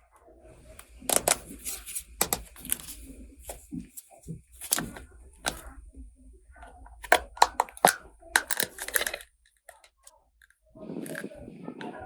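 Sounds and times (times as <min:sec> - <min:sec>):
toy pieces clicking and tapping: 0:01.1 - 0:03.0, 0:07.0 - 0:10.1.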